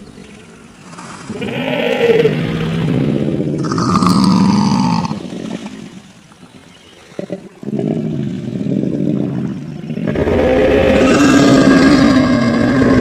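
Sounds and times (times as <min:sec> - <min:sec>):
creature pitched call: 0:00.9 - 0:02.7, 0:03.6 - 0:05.2, 0:10.0 - 0:13.0
creature low growl: 0:00.9 - 0:05.3, 0:09.9 - 0:13.0.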